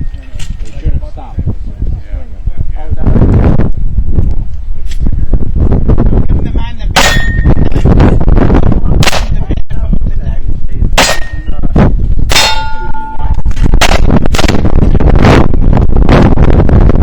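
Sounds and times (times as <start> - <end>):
heavy low rumble: 0.0 - 17.0
metallic ring of steel target: 6.9 - 7.8, 11.0 - 14.6
pistol shots: 9.0 - 9.4, 11.0 - 11.5.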